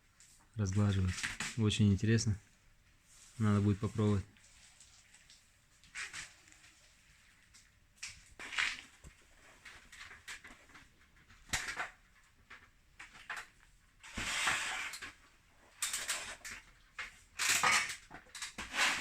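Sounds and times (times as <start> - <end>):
plaster scraping on wall: 14.0 - 15.3, 17.4 - 19.0.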